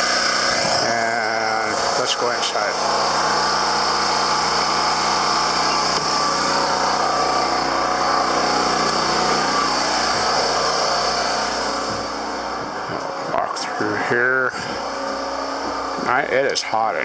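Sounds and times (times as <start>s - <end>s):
generator engine running steadily: 0.0s - 17.0s.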